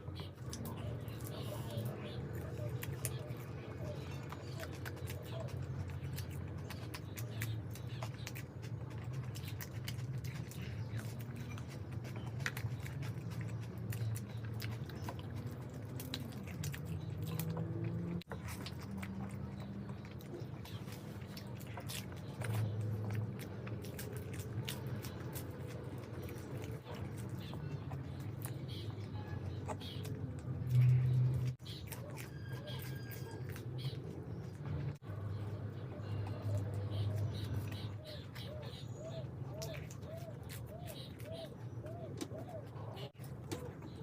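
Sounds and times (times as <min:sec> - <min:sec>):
person chewing and biting: 0:00.4 - 0:35.0, 0:36.5 - 0:42.3.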